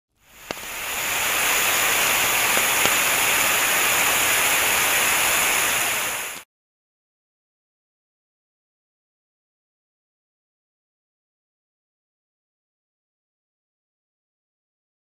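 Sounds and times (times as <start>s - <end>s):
loud static-like hiss: 0.2s - 6.5s.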